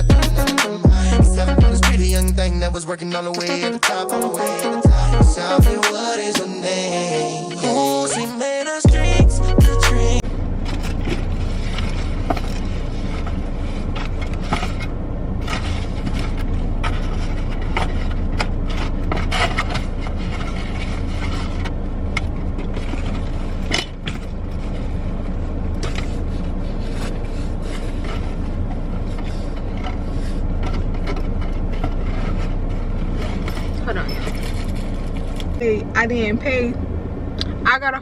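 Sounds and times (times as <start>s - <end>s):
car cabin rumble: 0.0s - 3.6s, 4.9s - 6.9s, 7.6s - 38.0s
handling scrapes and clicks: 10.6s - 35.6s.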